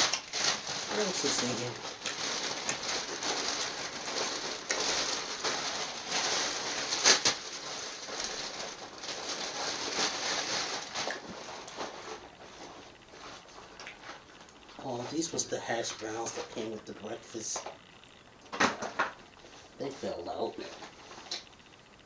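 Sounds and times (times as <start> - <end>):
paper bag rustling and crinkling: 0.0 - 17.0.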